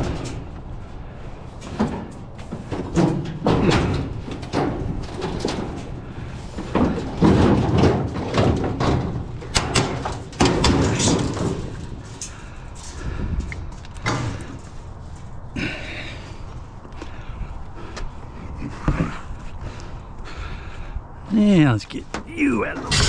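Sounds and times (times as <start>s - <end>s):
metal scrap clanking: 0.0s - 13.0s, 22.7s - 23.0s
metal scraping: 22.6s - 23.0s.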